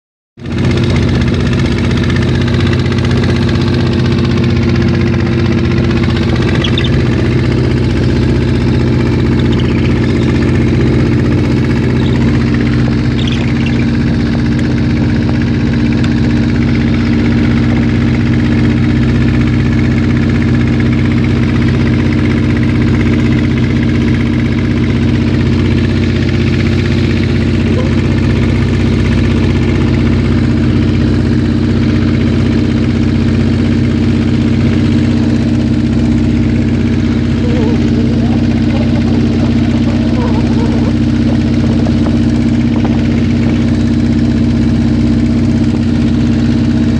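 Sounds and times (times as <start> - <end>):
boat engine humming steadily: 0.4 - 46.9.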